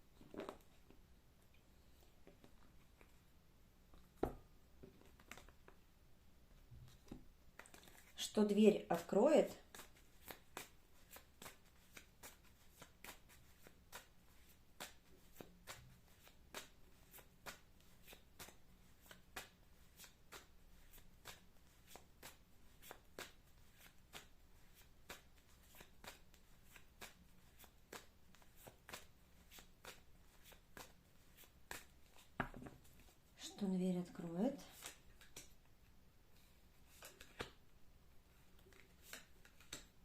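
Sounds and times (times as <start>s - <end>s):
cards being shuffled: 5.0s - 5.7s, 6.9s - 8.2s, 9.6s - 33.2s, 34.7s - 35.6s, 36.4s - 37.6s, 38.4s - 40.0s.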